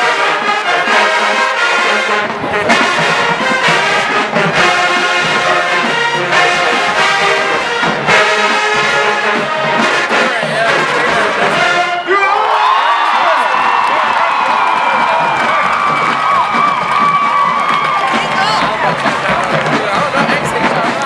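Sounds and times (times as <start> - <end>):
brass marching band playing: 0.0 - 21.0.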